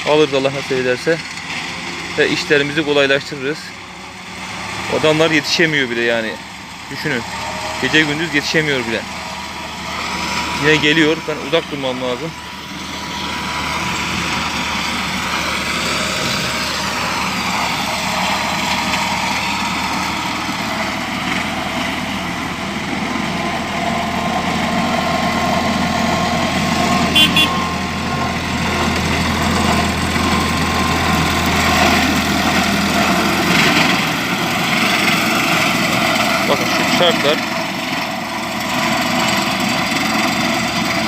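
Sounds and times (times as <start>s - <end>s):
hay mower engine running: 0.0s - 41.0s.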